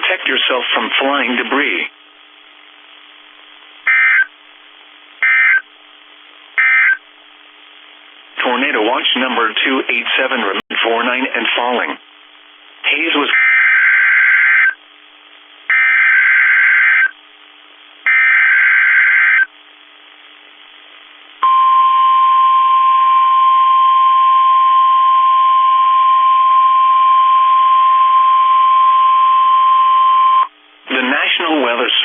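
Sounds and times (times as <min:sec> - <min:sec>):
steady alarm tone: 0:03.9 - 0:04.3, 0:05.2 - 0:05.7, 0:06.6 - 0:07.0, 0:13.3 - 0:14.8, 0:15.7 - 0:17.2, 0:18.1 - 0:19.5, 0:21.4 - 0:30.5
buzzy digital data bursts: 0:05.2 - 0:05.6.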